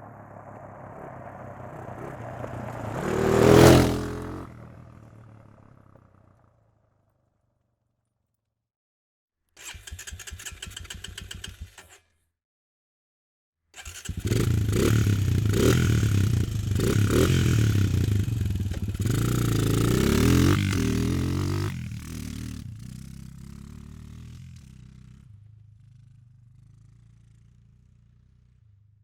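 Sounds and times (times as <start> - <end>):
quad bike engine revving: 0.1 - 5.3, 13.8 - 24.8.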